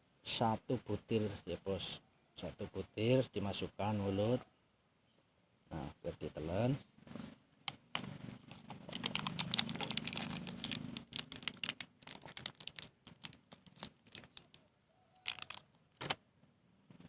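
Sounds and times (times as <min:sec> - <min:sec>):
quick clicks and rustling: 0:07.7 - 0:14.6, 0:15.2 - 0:16.2.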